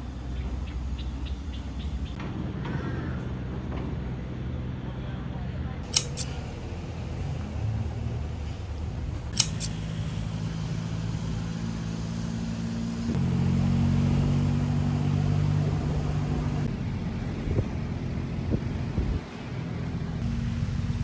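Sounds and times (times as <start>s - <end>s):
sharp double click: 5.8s - 8.0s, 9.3s - 10.8s
low motor hum: 5.8s - 21.0s.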